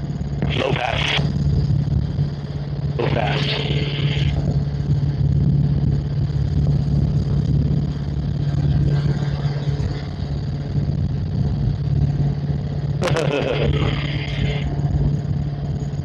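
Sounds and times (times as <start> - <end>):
helicopter drone: 0.0 - 16.0.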